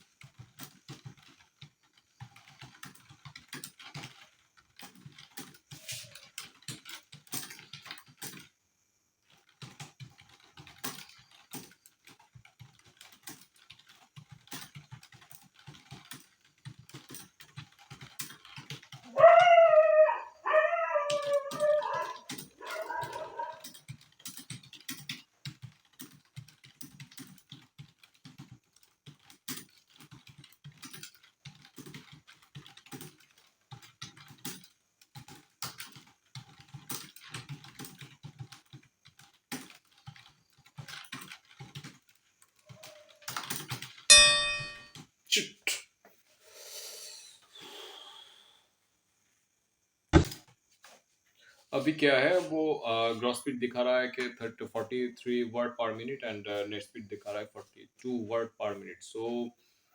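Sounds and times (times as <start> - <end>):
fast keyboard typing: 0.0 - 8.5, 9.2 - 44.9
high-pitched whining cry: 19.1 - 23.6.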